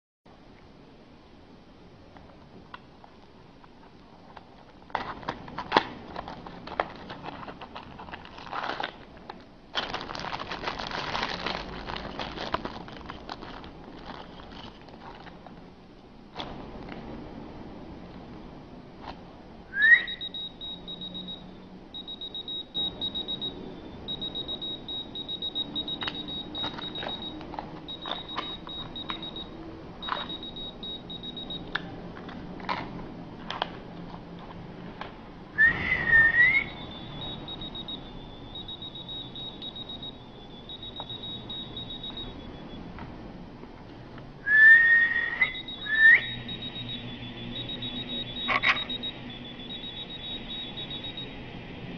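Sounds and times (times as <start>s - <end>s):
person whistling: 19.7s - 20.2s, 35.6s - 37.3s, 44.5s - 46.4s
rapid high-pitched beeping: 20.1s - 31.7s, 36.6s - 42.9s, 45.3s - 51.9s.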